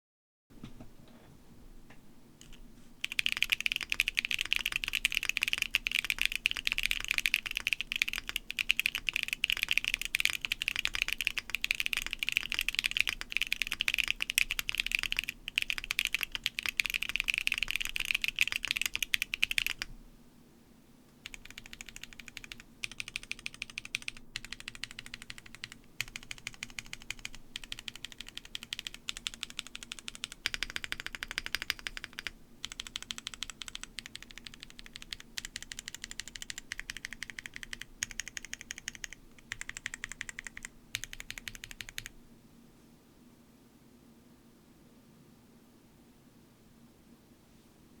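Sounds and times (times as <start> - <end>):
fast typing on mechanical keyboard: 2.4 - 19.9, 21.2 - 42.1.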